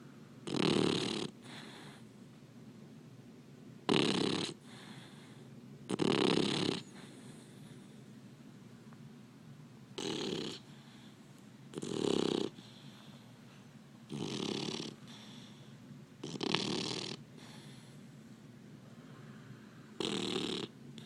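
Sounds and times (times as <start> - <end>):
puppy snoring: 0.4 - 2.2, 3.8 - 8.1, 9.9 - 13.3, 14.0 - 18.0, 20.0 - 21.0
puppy breathing: 0.5 - 2.2, 4.0 - 8.1, 10.0 - 18.2, 20.0 - 21.0.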